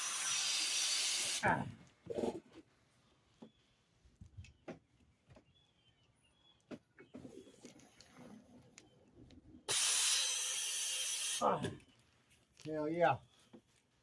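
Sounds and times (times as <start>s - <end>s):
loud aerosol spray hiss: 0.0s - 1.4s, 9.7s - 11.4s
bird chirps: 5.4s - 9.7s.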